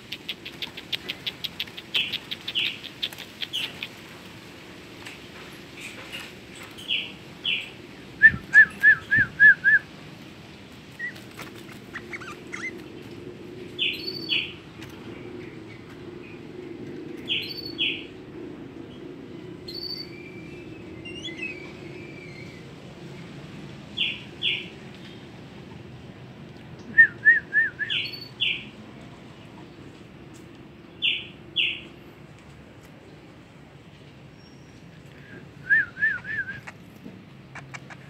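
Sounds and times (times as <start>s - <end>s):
songbird chirping: 0.0s - 4.0s.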